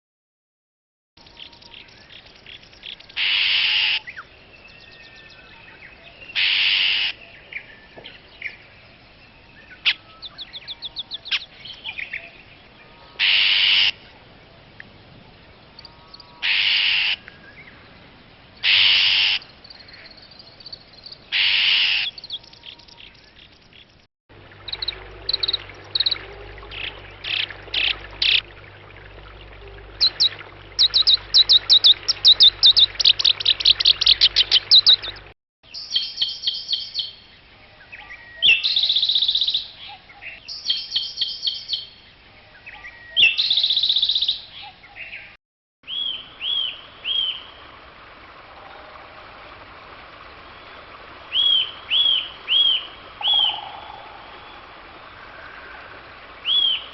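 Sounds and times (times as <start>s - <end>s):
harsh bird calls: 30.0s - 37.1s.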